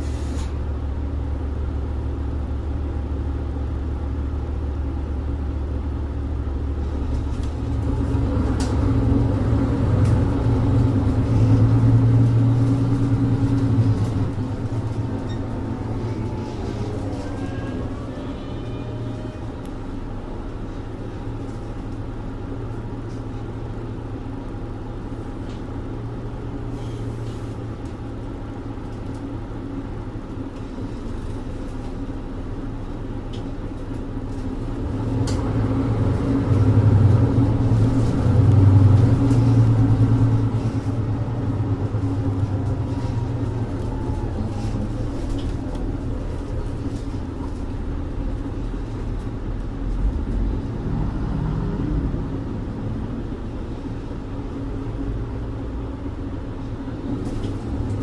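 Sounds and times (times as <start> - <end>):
bus diesel engine: 0.0 - 58.0
bus body rattles: 6.7 - 24.2, 25.2 - 50.9.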